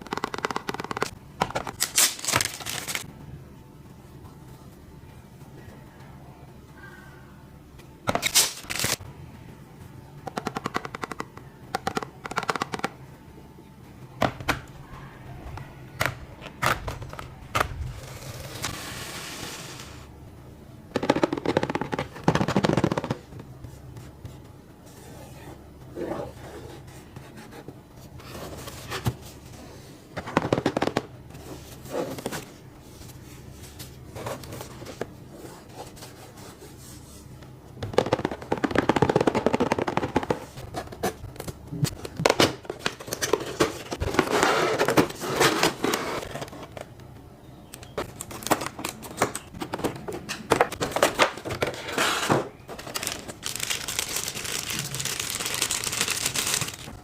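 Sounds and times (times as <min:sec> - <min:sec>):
packaging crackling: 0:52.8 - 0:57.0
packaging rattling: 0:52.8 - 0:57.0.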